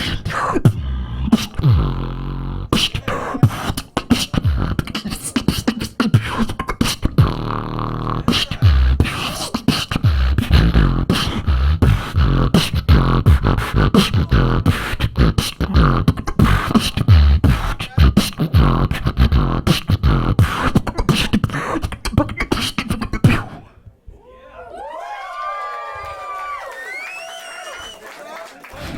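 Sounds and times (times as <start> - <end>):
beatboxing: 0.0 - 23.8.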